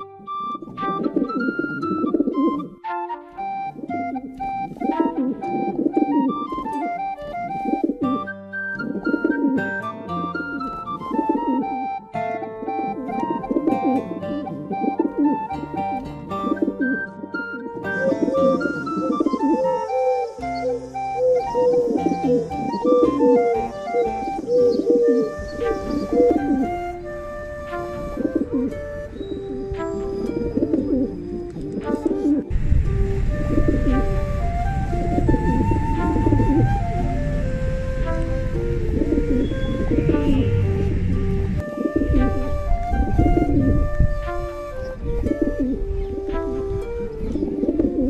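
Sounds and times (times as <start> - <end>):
background music melody: 0.0 - 48.0
pigeons cooing: 0.0 - 48.0
low rumble: 32.5 - 41.6.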